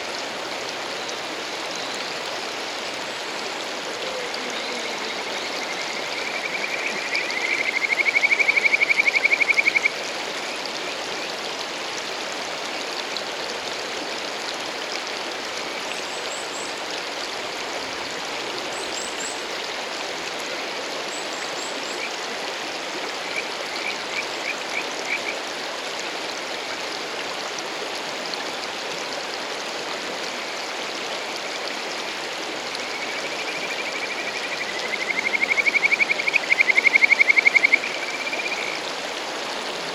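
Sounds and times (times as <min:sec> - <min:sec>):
mountain stream rushing: 0:00.0 - 0:39.9
frog trilling call: 0:04.0 - 0:10.0, 0:32.8 - 0:38.8.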